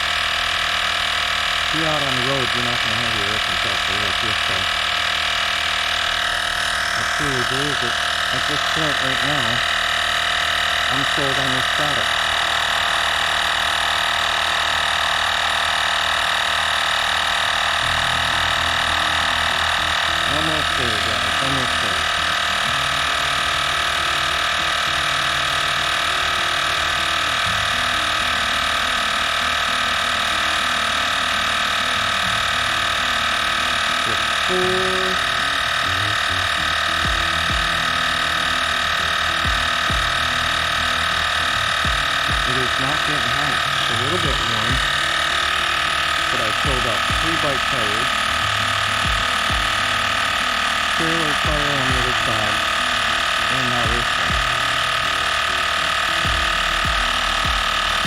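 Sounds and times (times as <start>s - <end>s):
low throb: 0.0s - 58.0s
tire inflator compressor running: 0.0s - 58.0s
low thumps: 36.8s - 37.9s, 39.4s - 40.3s, 41.8s - 42.5s, 49.0s - 49.8s, 56.3s - 57.8s.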